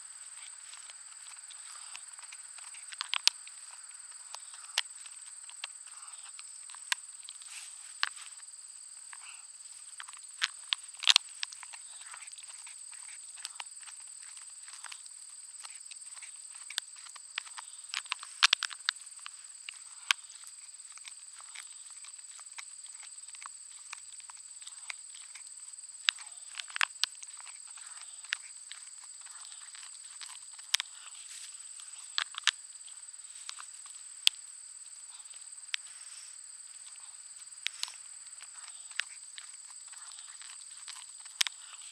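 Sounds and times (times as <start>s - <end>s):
dog chewing a bone: 0.4s - 7.5s, 15.7s - 32.6s.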